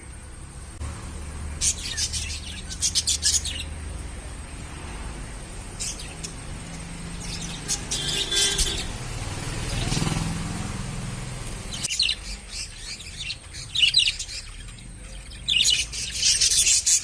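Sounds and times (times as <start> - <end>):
budgerigars chirping: 1.6 - 4.0, 5.5 - 9.0, 11.5 - 17.0.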